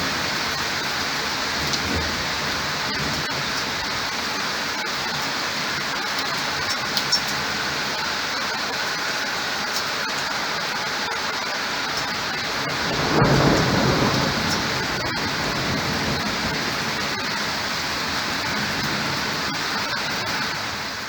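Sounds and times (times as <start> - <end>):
low rumble of thunder: 0.0 - 4.0, 12.2 - 19.5
heavy rain: 0.0 - 21.0.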